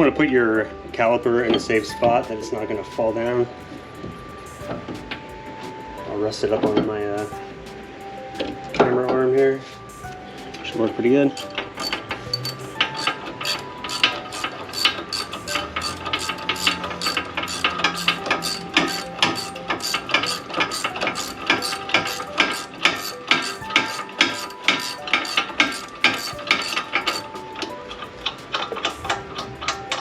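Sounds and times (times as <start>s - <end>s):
ratchet wrench clicking: 11.4s - 27.3s.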